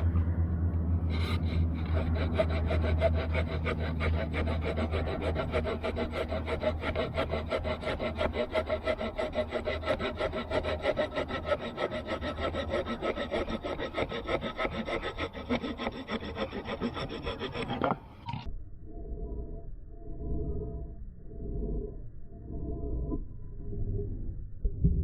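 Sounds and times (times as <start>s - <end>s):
small saw cutting wood: 1.1s - 18.1s.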